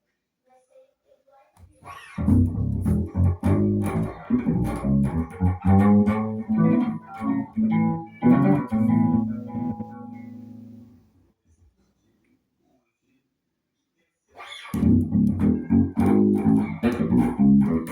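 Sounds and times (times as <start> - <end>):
plucked electric bass notes: 2.2 - 10.9, 14.8 - 17.9.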